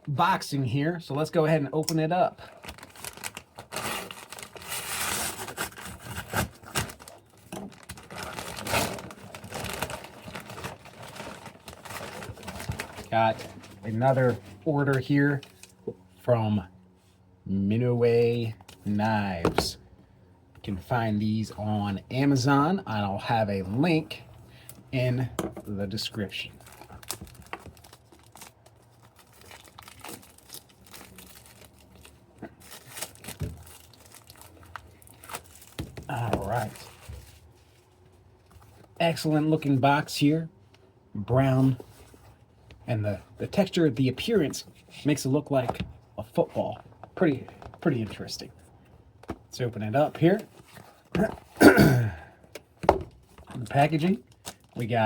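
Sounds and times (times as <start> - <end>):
packaging rustling and crinkling: 2.4 - 15.8, 26.4 - 39.0.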